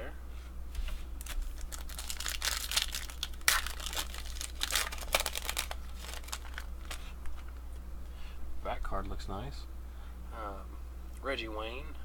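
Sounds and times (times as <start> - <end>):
cards and wrapper crinkling: 1.2 - 7.6
wrapper crackle: 1.2 - 7.6.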